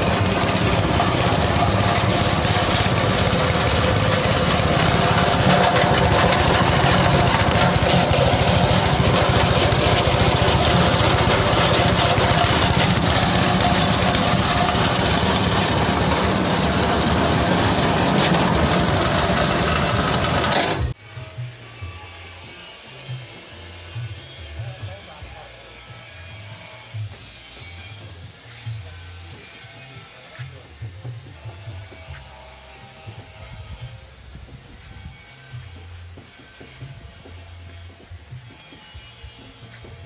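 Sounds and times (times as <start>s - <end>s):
grinding machine droning: 0.0s - 21.0s.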